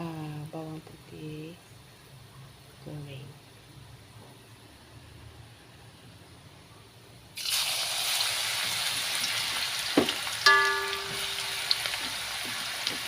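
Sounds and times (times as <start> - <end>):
garlic sizzling in hot oil: 7.4 - 13.0
metal clang ringing: 10.5 - 11.7.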